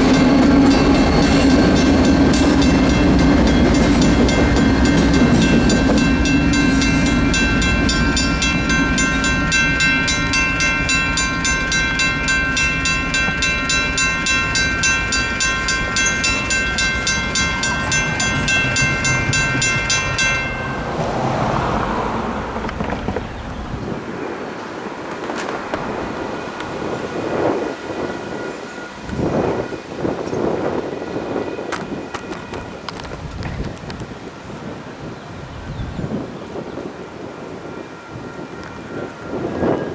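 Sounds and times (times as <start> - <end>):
freight train rumbling: 0.0 - 39.9
level crossing bell ringing: 0.2 - 21.0.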